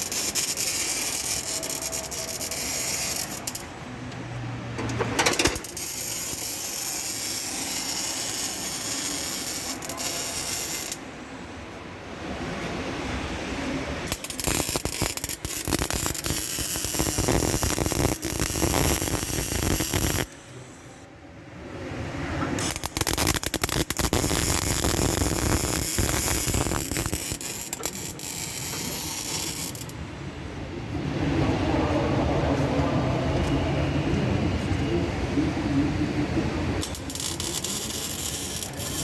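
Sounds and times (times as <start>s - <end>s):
welder crackling: 0.0s - 4.2s, 4.8s - 11.1s, 14.0s - 20.5s, 22.5s - 30.0s, 36.8s - 39.0s.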